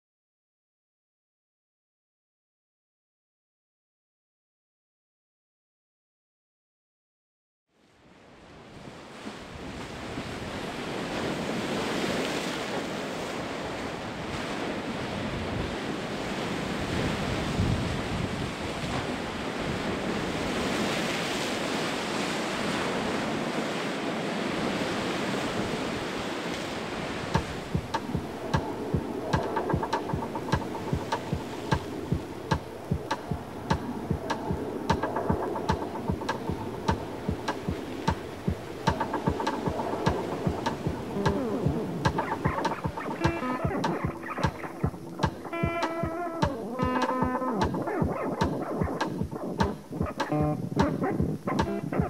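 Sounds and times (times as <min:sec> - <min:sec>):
sea waves washing in: 0:08.0 - 0:52.0
regular ticking clicks: 0:27.4 - 0:52.0.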